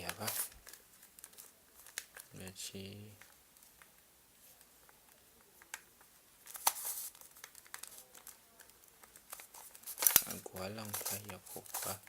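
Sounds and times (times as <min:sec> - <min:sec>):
plastic puzzle cube clicking: 0:05.1 - 0:12.0.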